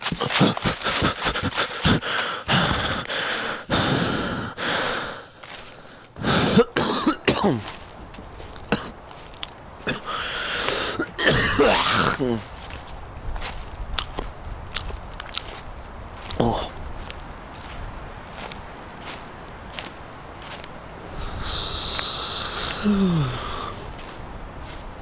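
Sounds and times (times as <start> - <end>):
person coughing: 0.0 - 2.8, 6.2 - 7.8, 8.7 - 9.0, 9.9 - 10.2, 10.8 - 12.5, 22.5 - 23.8
breathy hissing with clicks: 0.0 - 6.8, 8.4 - 12.4, 21.0 - 24.0
person crying out: 22.4 - 23.8.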